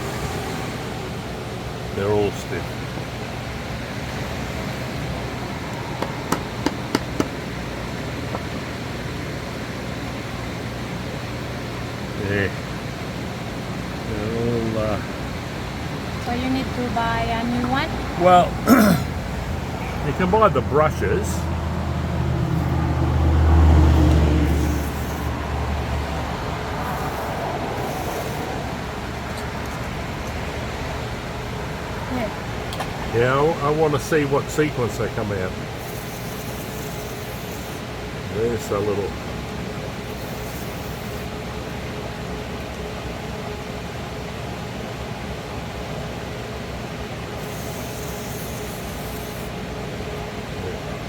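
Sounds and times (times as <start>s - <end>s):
distant traffic rush: 0.0s - 51.0s
steady low hum: 0.0s - 51.0s
sharp metallic clicks and taps: 6.0s - 7.4s.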